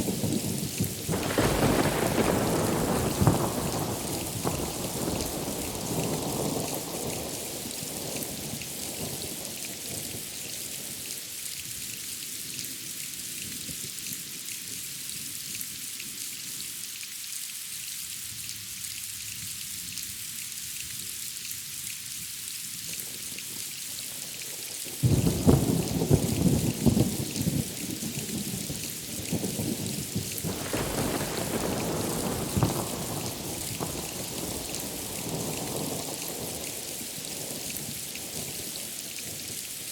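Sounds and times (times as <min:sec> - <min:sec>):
heavy rain hissing: 0:00.0 - 0:11.0, 0:24.3 - 0:39.9
thunder rumbling: 0:01.0 - 0:07.2, 0:25.0 - 0:27.8, 0:29.4 - 0:36.9
close thunder crack: 0:01.1 - 0:07.2, 0:25.0 - 0:27.8, 0:29.4 - 0:36.6.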